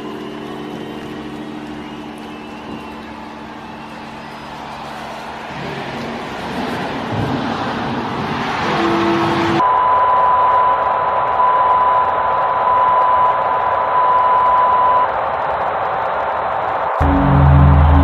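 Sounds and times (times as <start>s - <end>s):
noisy broadcast audio: 8.0s - 18.0s
steady test tone: 17.0s - 18.0s.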